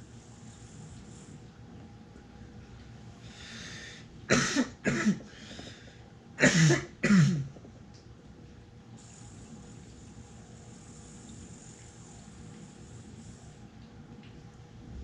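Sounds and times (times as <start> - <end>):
man coughing: 4.3 - 5.3, 6.4 - 7.5.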